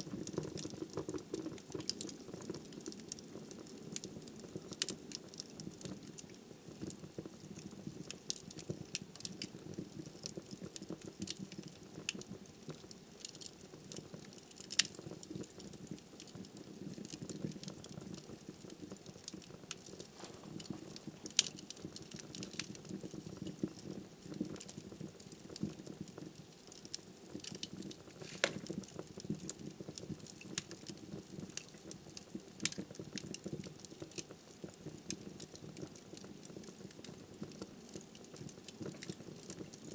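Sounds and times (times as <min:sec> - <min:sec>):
firewood crackling and popping: 0:00.0 - 0:39.9
fire flames rumbling: 0:18.0 - 0:23.0.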